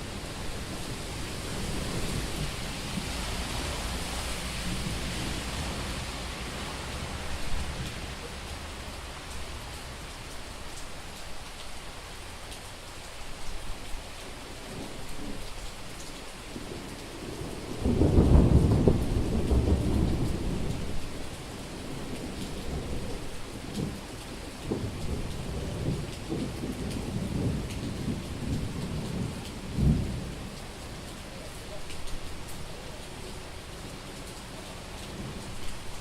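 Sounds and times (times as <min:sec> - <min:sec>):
heavy rain on a street: 0:00.0 - 0:36.0
thunder rumbling: 0:16.6 - 0:33.7.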